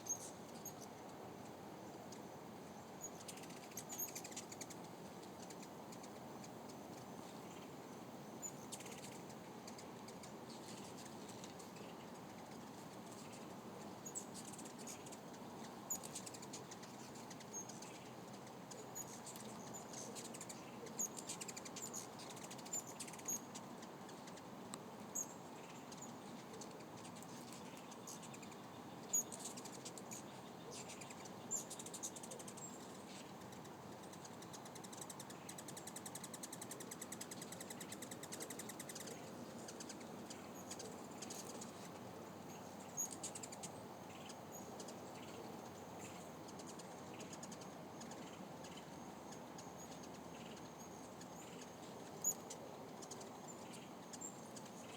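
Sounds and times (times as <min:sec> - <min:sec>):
hummingbirds chirping: 0:00.0 - 0:01.0, 0:02.1 - 0:24.5, 0:25.2 - 0:54.9.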